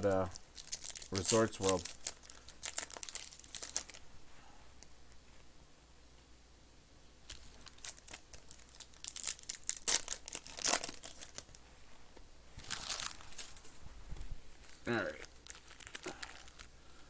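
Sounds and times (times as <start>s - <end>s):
plastic wrapper rustling: 0.2s - 4.1s, 7.3s - 11.6s, 12.6s - 17.0s.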